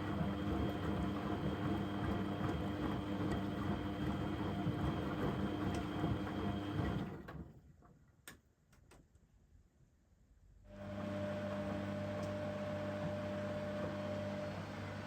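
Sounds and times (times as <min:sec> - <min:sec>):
washing machine motor hum: 0:00.0 - 0:07.3, 0:10.7 - 0:15.0.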